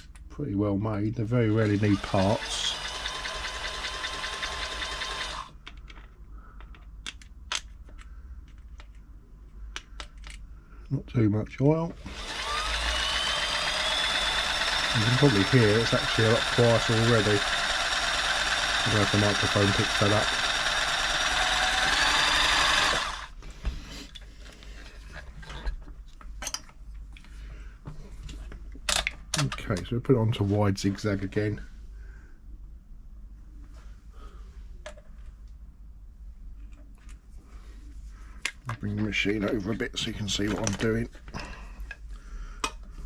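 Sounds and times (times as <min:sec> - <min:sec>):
sewing machine running: 0:01.6 - 0:05.5, 0:12.0 - 0:23.3
light clicks and knocks of handling: 0:05.6 - 0:11.0.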